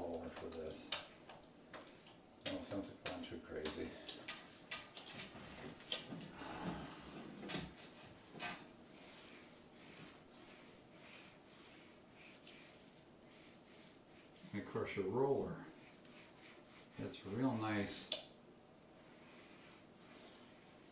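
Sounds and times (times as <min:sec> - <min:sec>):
paint roller rubbing on wall: 0:08.0 - 0:18.1, 0:18.9 - 0:20.9.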